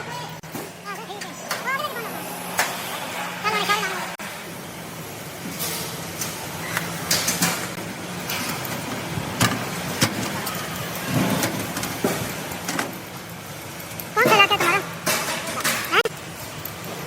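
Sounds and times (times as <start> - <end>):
sharp knocks and clatter: 7.0 - 13.0.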